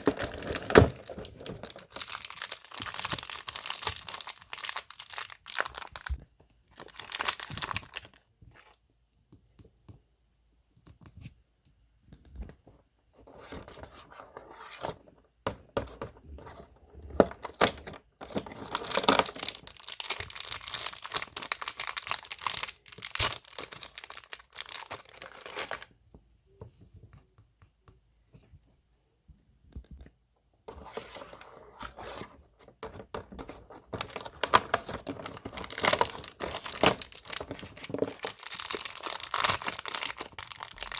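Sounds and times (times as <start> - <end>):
toy packaging crinkling and tearing: 0.0 - 8.8, 17.3 - 25.9, 33.4 - 40.9.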